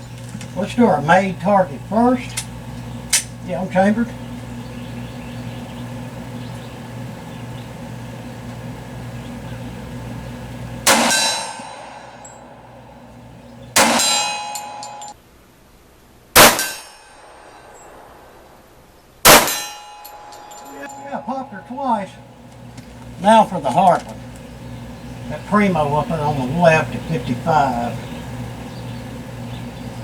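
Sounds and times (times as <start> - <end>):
pistol shots: 10.8 - 12.0, 13.8 - 14.7, 16.4 - 17.7, 19.2 - 19.8
bullets ringing steel target: 10.8 - 12.8, 13.8 - 15.2, 16.4 - 18.0, 19.2 - 22.3.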